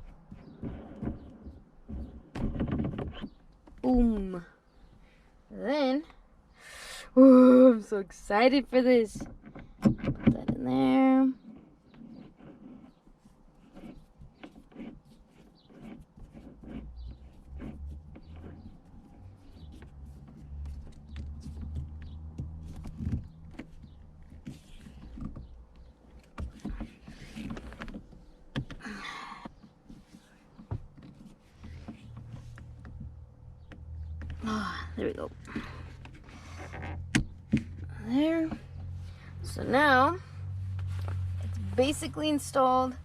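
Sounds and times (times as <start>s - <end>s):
rustling: 11.3s - 43.0s.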